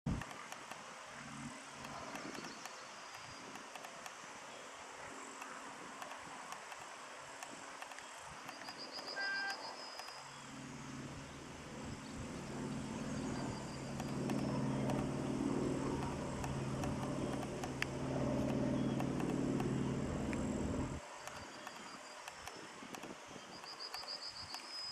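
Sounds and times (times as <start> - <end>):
diesel locomotive engine drone: 10.3 - 21.8.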